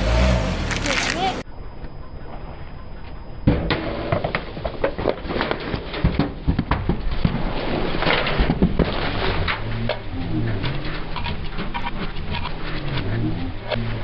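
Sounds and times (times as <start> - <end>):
rough noisy bed: 0.0 - 1.4, 3.4 - 14.0
brittle objects crushed under tyre: 0.6 - 1.2.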